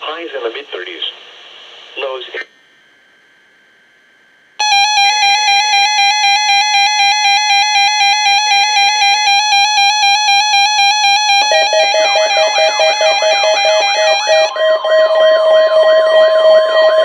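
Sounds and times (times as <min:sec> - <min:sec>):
high alarm beep pulsing: 0:04.6 - 0:14.8
lower warbling beep: 0:04.6 - 0:16.8.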